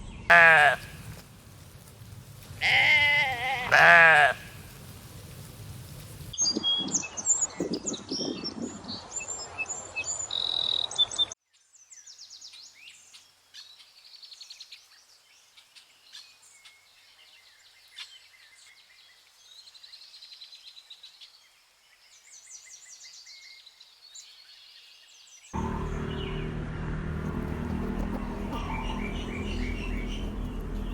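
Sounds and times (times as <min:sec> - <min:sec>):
small birds chirping: 0:00.0 - 0:08.7, 0:11.7 - 0:30.9.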